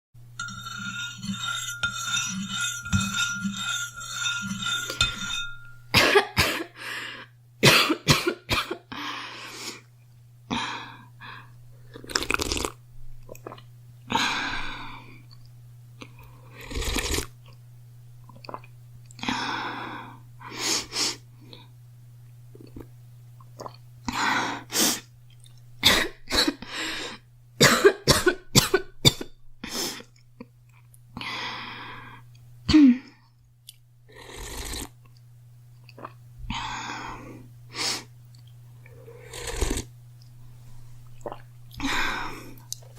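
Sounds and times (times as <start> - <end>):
low hum: 0.2 - 6.4
pulsing ringing tone: 0.4 - 5.9
girl coughing: 5.9 - 6.8, 7.6 - 8.9, 25.8 - 26.6, 27.6 - 29.3, 32.7 - 33.1.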